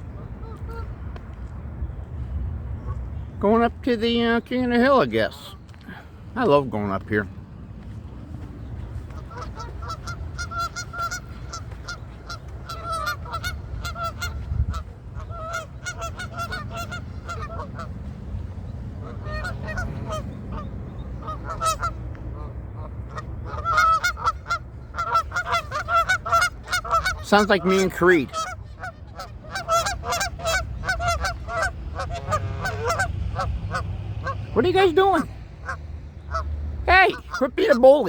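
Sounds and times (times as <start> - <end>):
geese honking: 0.0 - 1.0, 8.6 - 38.0.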